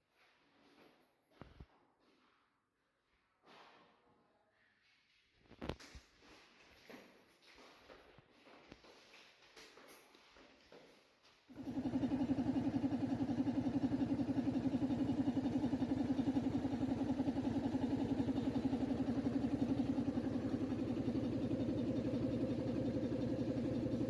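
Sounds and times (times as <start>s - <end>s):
small engine running: 11.5s - 24.0s.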